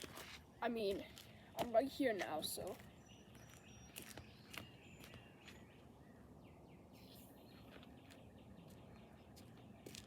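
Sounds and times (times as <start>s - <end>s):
small bird chirps: 2.6s - 10.0s.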